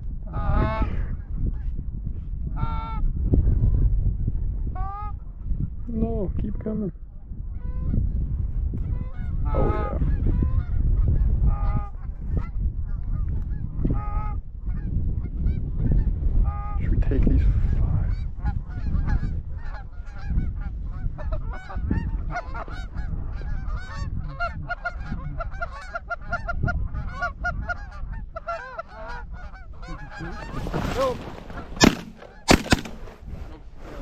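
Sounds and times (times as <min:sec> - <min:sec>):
geese honking: 0:21.3 - 0:33.1
shotgun blasts: 0:31.8 - 0:33.2.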